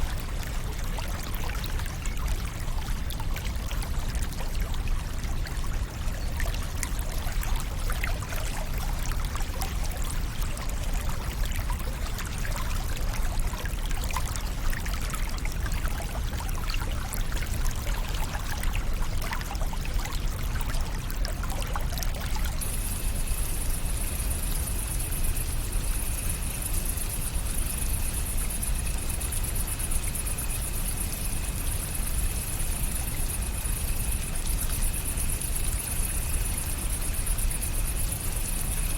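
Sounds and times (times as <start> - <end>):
steady high-pitched whine: 0.0 - 38.9.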